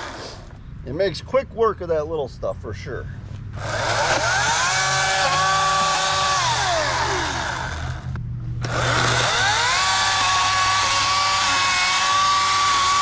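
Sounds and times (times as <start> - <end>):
electric chainsaw motor whining: 0.0 - 0.5, 3.6 - 13.0.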